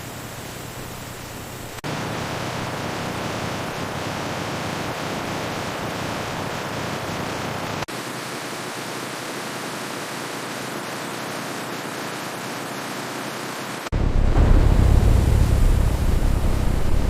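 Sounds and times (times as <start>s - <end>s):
steady rushing noise: 9.8s - 17.0s
deep rumble: 13.9s - 17.0s.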